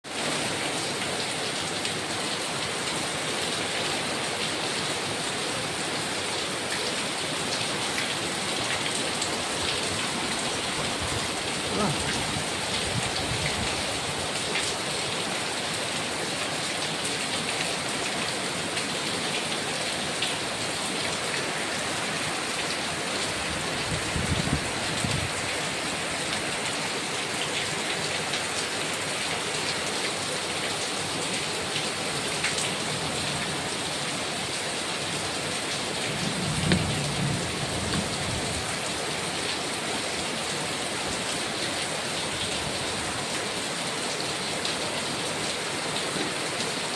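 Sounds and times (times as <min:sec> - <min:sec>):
heavy rain falling: 0:00.0 - 0:46.9
sharp raindrops striking close: 0:35.4 - 0:39.6.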